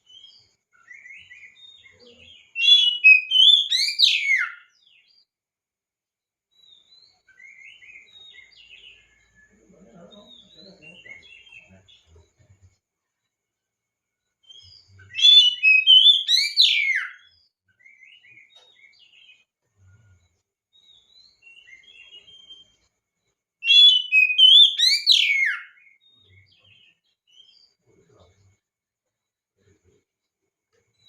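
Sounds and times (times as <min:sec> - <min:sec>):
bird singing whistled notes: 0:00.0 - 0:05.2, 0:06.5 - 0:12.3, 0:14.2 - 0:28.0.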